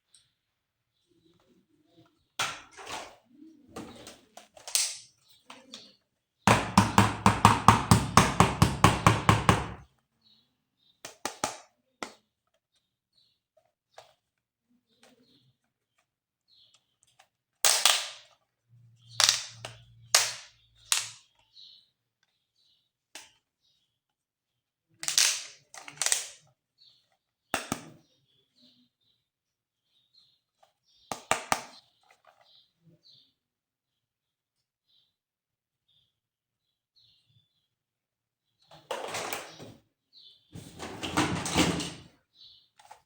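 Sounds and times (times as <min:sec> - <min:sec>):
plastic toy parts clicking: 0:04.5 - 0:05.8, 0:19.2 - 0:21.3, 0:25.0 - 0:26.4.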